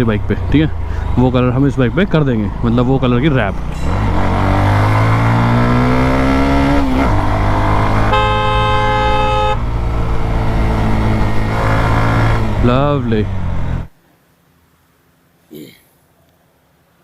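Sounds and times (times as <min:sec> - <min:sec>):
motorcycle engine accelerating: 0:00.0 - 0:13.9
vehicle horn: 0:07.8 - 0:09.8.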